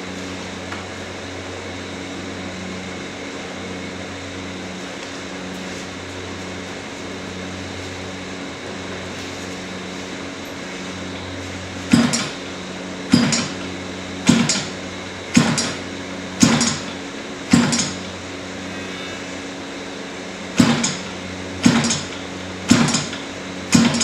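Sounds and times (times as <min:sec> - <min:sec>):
steady low hum: 0:00.0 - 0:24.0
sharp mechanical knocks: 0:11.9 - 0:12.5, 0:13.1 - 0:18.2, 0:20.6 - 0:24.0.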